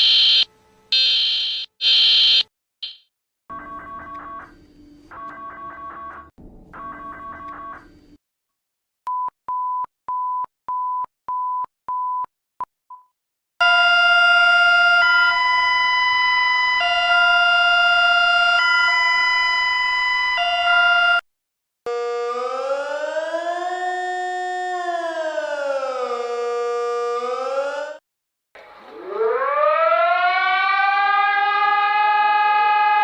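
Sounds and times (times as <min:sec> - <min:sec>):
siren wail: 0:00.0 - 0:04.5, 0:13.6 - 0:21.2, 0:21.9 - 0:28.0, 0:28.8 - 0:33.0
short electronic beeps: 0:02.2 - 0:03.0.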